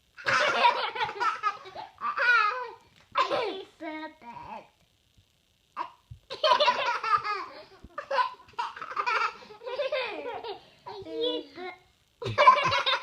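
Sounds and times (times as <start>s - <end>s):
young children laughing: 0.2s - 3.7s, 6.3s - 11.0s, 12.2s - 13.0s.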